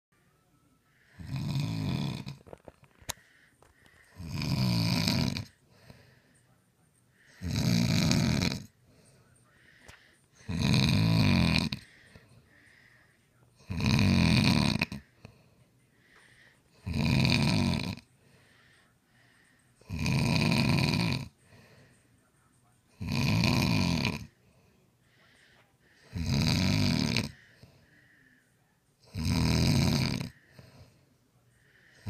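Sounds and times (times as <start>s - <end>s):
man snoring: 1.0s - 2.6s, 4.0s - 5.6s, 7.3s - 8.8s, 10.4s - 12.2s, 13.6s - 15.2s, 16.7s - 18.1s, 19.8s - 21.4s, 23.0s - 24.4s, 26.0s - 27.6s, 29.0s - 31.0s.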